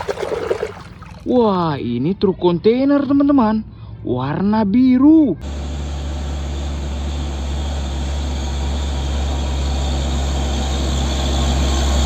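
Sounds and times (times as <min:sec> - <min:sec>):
motor humming: 0:05.4 - 0:12.0.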